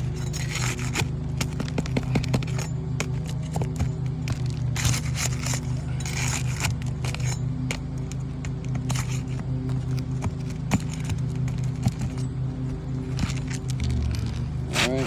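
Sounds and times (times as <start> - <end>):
shingles scraping and cracking: 0.0 - 15.0
steady low hum: 0.0 - 15.0.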